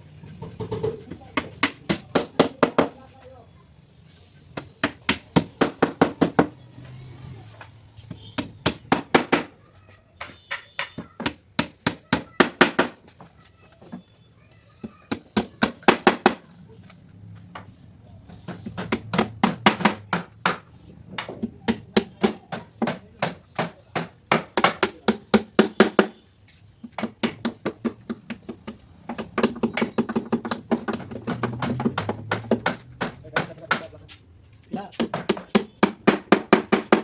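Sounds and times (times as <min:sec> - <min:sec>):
hammer striking wood: 0:04.6 - 0:06.5, 0:08.3 - 0:09.6, 0:10.2 - 0:13.2, 0:14.8 - 0:16.4, 0:18.4 - 0:26.2, 0:26.8 - 0:34.0, 0:34.9 - 0:37.0.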